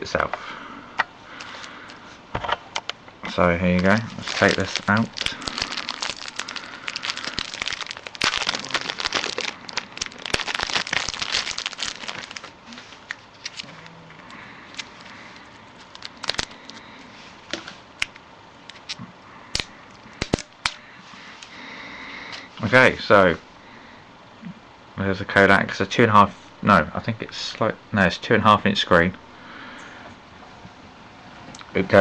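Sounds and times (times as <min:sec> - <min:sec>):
packaging crinkling: 0:03.7 - 0:16.8.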